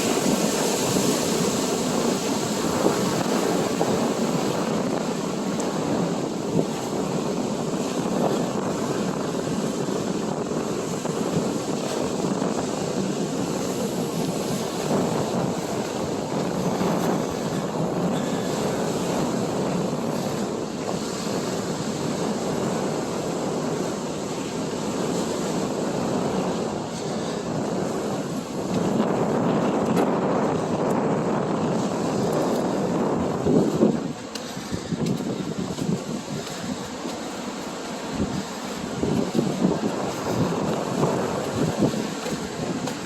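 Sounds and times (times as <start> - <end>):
ocean surf washing onto beach: 0.0 - 43.0
wind on microphone: 0.0 - 43.0.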